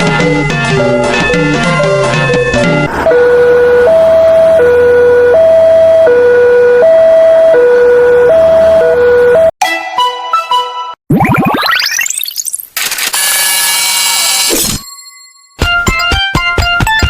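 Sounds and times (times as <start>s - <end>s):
two-tone hi-lo siren: 2.7s - 9.5s.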